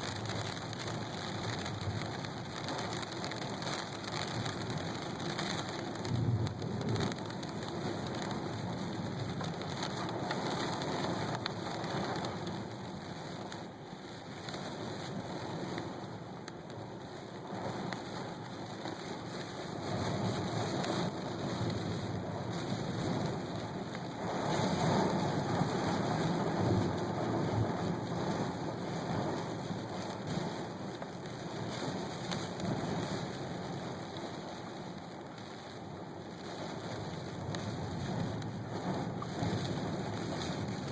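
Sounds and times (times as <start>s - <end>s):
heavy rain: 0.0s - 40.9s
wind: 0.0s - 40.9s
low rumble of thunder: 6.0s - 12.6s.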